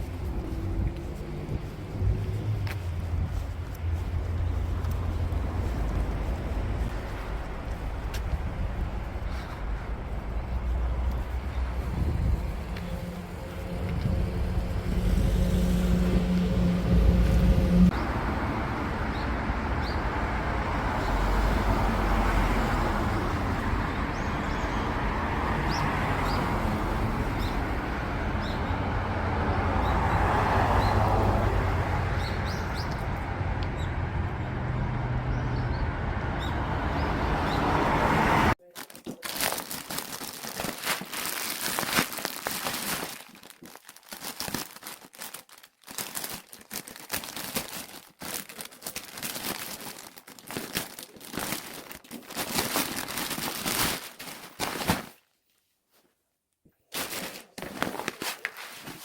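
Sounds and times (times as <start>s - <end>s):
rustling and crinkling: 0.0s - 17.9s, 38.5s - 59.0s
road traffic noise: 0.0s - 38.6s.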